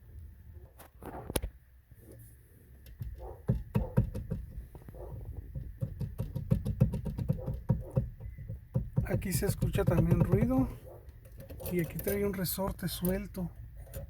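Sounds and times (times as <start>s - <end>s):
steering column clunking and rattling: 2.8s - 14.0s.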